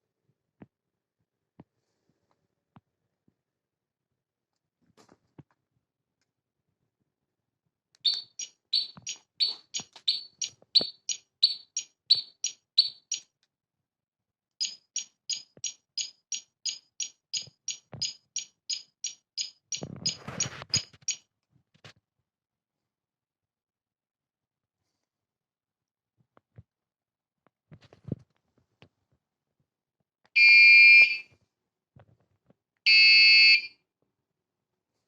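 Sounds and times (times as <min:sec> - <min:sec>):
rapid high electronic chirps: 0:08.0 - 0:13.2, 0:14.6 - 0:21.2.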